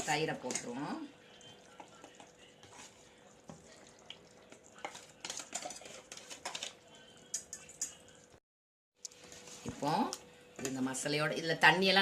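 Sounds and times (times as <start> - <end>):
spoon scraping in a pan: 0.0 - 8.3
faint sizzle: 0.0 - 8.4.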